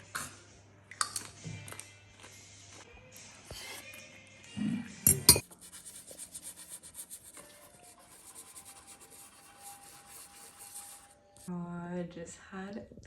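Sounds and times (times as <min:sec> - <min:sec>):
pen scratching on paper: 0:05.4 - 0:11.1.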